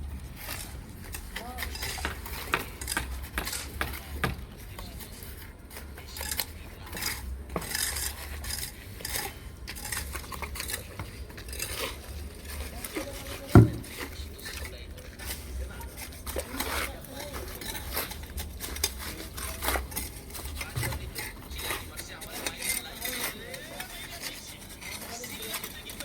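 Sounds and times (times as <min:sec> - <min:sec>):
metal clinking and scraping: 0:00.2 - 0:26.0
heavy thud: 0:13.6 - 0:14.0.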